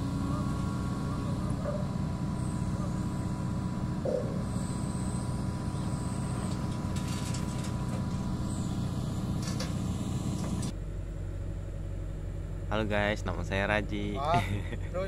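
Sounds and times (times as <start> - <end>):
excavator diesel engine running: 0.0 - 15.0
short metallic rattles: 6.4 - 8.3.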